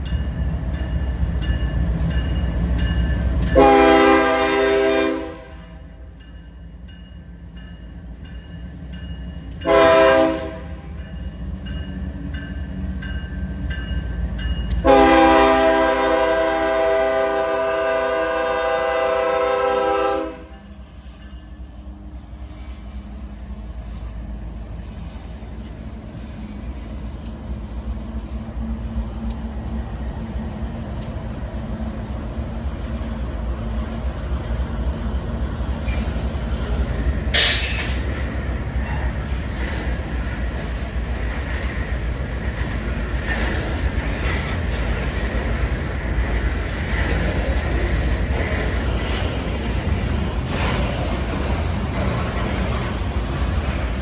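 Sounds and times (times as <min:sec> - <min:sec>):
train rumbling: 0:00.0 - 0:54.0
locomotive air horn blasts: 0:03.6 - 0:05.8, 0:09.6 - 0:10.9, 0:14.8 - 0:20.7.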